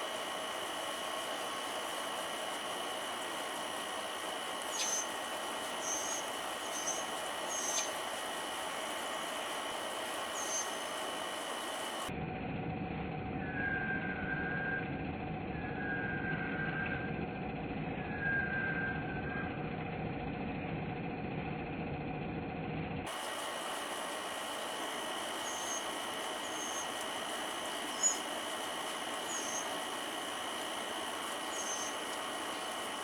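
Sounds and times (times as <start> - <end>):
air conditioner humming: 0.0 - 12.1, 23.0 - 33.0
long flat whistled notes: 10.3 - 10.9, 13.4 - 14.8, 25.4 - 27.0, 31.4 - 32.6.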